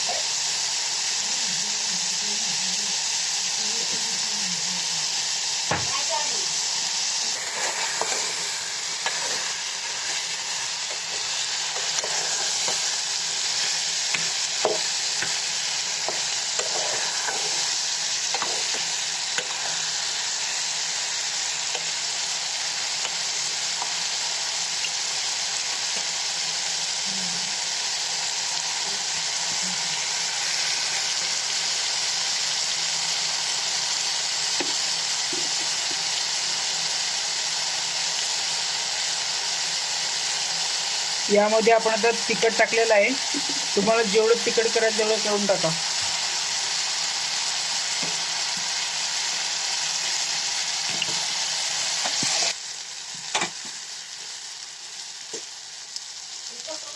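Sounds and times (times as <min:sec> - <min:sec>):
vegetables sizzling in oil: 0:00.0 - 0:56.9
spatula scraping a pan: 0:07.3 - 0:19.8.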